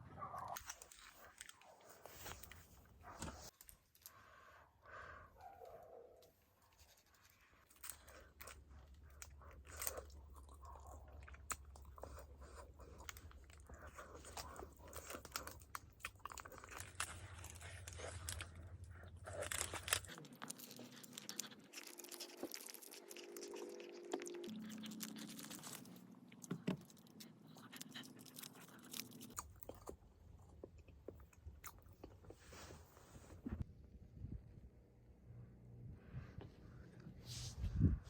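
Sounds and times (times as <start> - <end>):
low steady hum: 0.0 - 38.0
small crunches and clicks: 0.4 - 4.2, 11.4 - 32.3.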